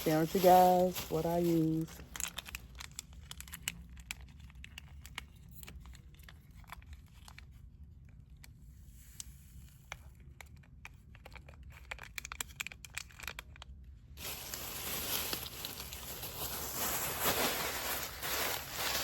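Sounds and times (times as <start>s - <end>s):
plastic bag crinkling: 0.0s - 5.2s, 14.2s - 19.0s.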